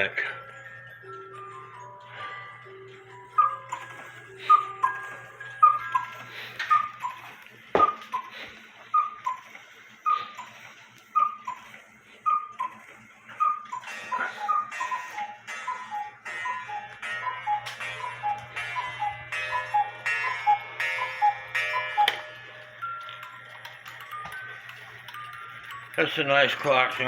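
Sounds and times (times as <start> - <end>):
clock ticking: 0.0 - 27.0
cuckoo clock call: 0.0 - 27.0
lower cuckoo call: 3.3 - 10.6, 11.2 - 22.3.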